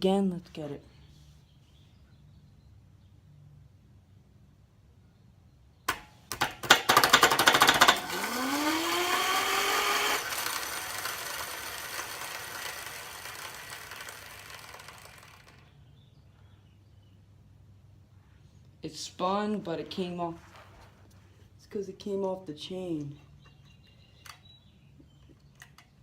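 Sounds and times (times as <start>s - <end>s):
spinning parts running down: 6.6s - 15.8s
electric motor whine: 7.7s - 15.6s.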